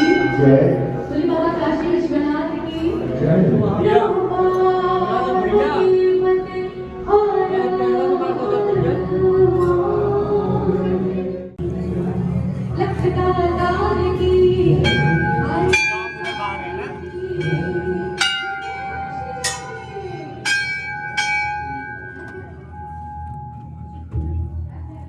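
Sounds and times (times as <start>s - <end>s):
bell ringing: 0.0s - 1.9s, 14.8s - 24.2s
devotional singing with music: 0.0s - 23.6s.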